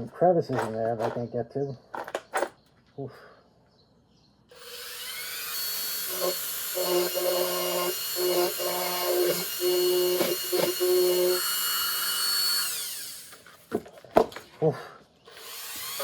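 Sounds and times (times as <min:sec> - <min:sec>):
rotary tool high whine: 0:04.5 - 0:13.5, 0:15.3 - 0:16.0
bit buzzing against metal: 0:04.6 - 0:13.2.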